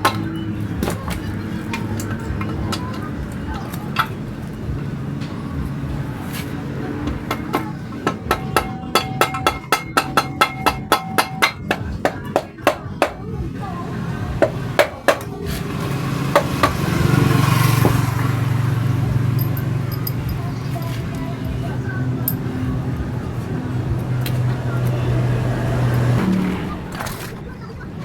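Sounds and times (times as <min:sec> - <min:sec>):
hammer striking metal: 0:07.1 - 0:13.3.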